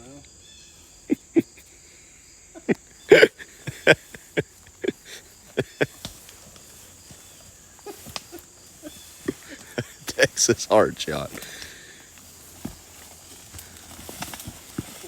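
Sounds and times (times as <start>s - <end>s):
people laughing: 1.0s - 1.8s, 2.5s - 6.9s, 7.8s - 11.7s.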